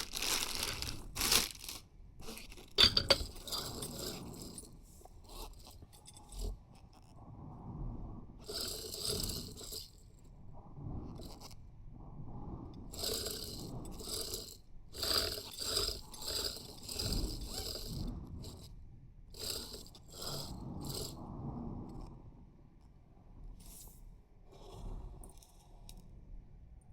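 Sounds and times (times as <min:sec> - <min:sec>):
packaging crinkling and scraping: 0:00.0 - 0:04.1.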